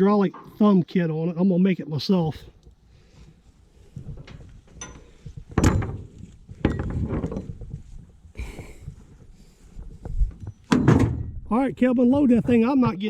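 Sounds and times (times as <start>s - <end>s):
metal parts clanking and rattling: 4.1s - 7.6s, 10.6s - 11.4s
loud knocks: 10.7s - 11.4s.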